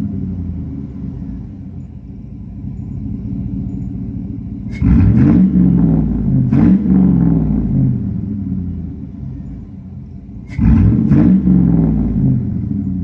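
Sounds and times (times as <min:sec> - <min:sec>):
truck engine idling and revving: 0:00.0 - 0:13.0.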